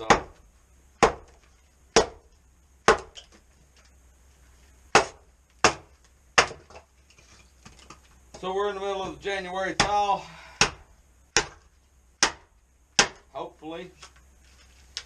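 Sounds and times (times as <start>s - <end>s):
firewood being chopped: 0.0s - 3.5s, 4.9s - 6.9s, 7.6s - 13.3s.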